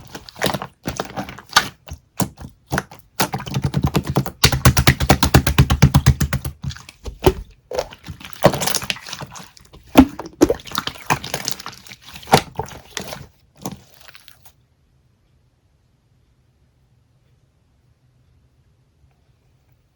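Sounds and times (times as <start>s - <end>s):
rapid even tapping: 1.6s - 8.8s.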